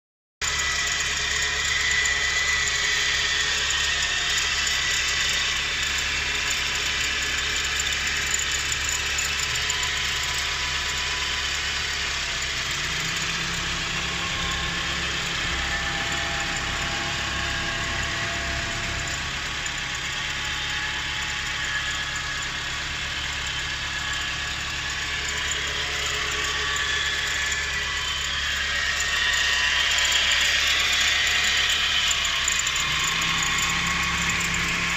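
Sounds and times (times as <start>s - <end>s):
high whine: 0.4s - 34.9s
car engine running: 0.5s - 34.9s
low tone: 12.7s - 34.9s.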